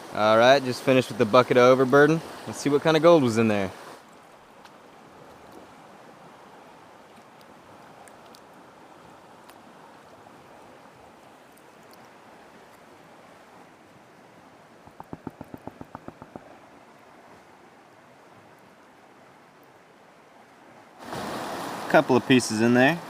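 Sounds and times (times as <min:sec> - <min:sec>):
creek water running: 0:00.0 - 0:23.0
sharp knocks: 0:14.8 - 0:16.6.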